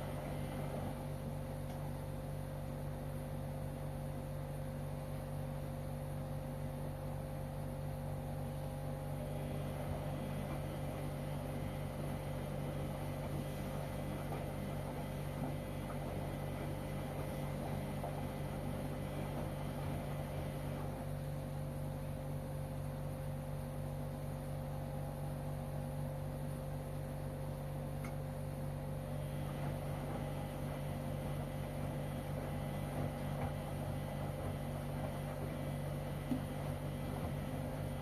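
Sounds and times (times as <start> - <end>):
washing machine swishing: 0.0 - 3.2, 8.2 - 24.0, 28.6 - 38.0
washing machine humming: 0.0 - 38.0.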